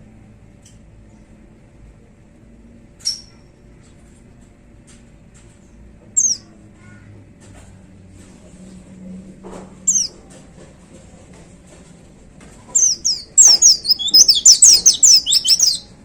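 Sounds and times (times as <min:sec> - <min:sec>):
bird sharp high calls: 0:09.9 - 0:10.1, 0:12.8 - 0:16.0
faint short bird chirps: 0:12.8 - 0:15.9.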